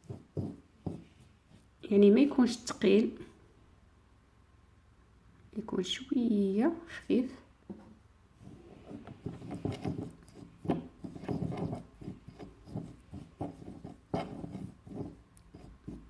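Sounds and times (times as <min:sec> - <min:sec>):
spoon stirring paste in bowl: 0:08.5 - 0:16.0.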